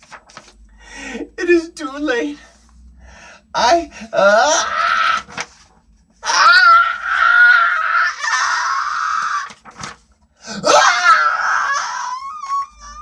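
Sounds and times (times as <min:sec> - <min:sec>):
man making high-pitched cries: 0:10.5 - 0:13.0.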